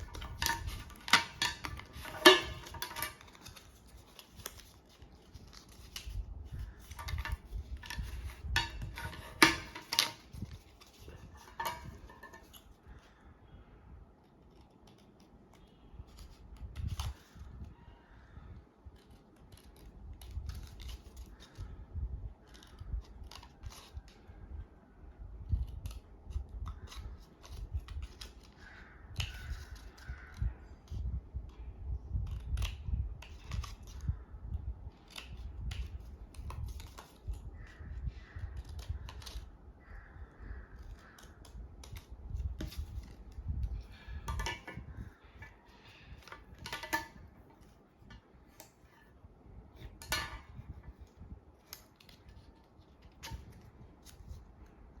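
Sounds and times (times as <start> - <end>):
scissors snipping paper: 0.0 - 11.4, 18.9 - 21.7, 25.4 - 34.2, 34.9 - 39.5, 40.6 - 44.1
paper being handled: 0.0 - 13.2.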